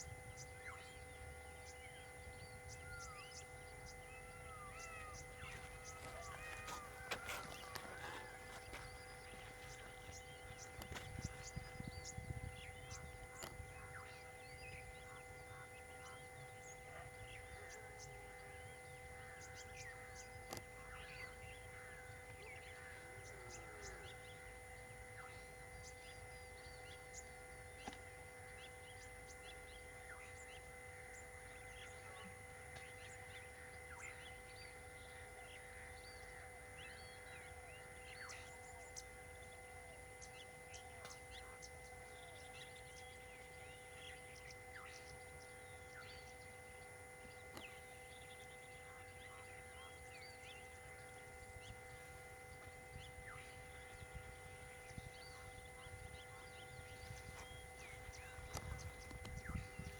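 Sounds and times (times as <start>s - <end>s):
bird chirps and calls: 0.4s - 24.4s.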